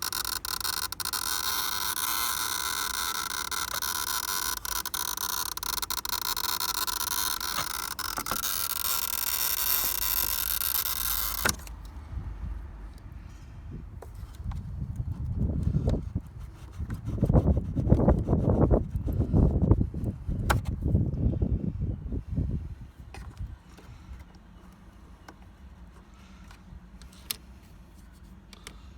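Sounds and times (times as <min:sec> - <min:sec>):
car relay buzzing and chattering: 0:00.0 - 0:12.0.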